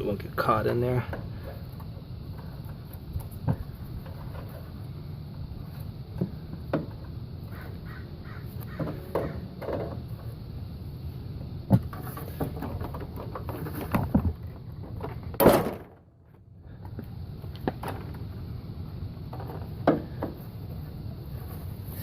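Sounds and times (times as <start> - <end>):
birds cawing: 7.5 - 9.5.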